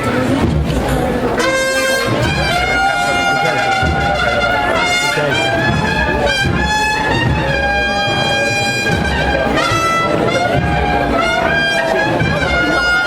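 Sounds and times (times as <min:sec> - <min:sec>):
cornets holding long notes: 0:00.0 - 0:13.0
drums beating steadily: 0:00.0 - 0:13.0.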